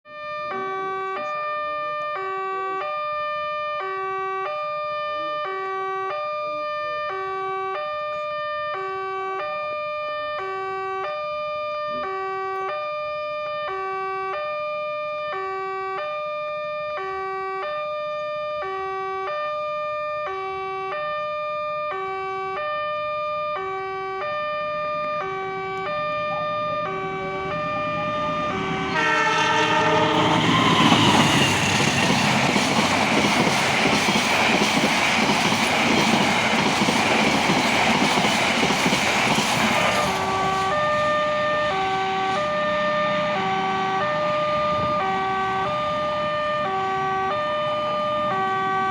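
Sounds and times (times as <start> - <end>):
level-crossing two-tone alarm: 22.6 - 38.7
train rushing past: 25.0 - 48.5.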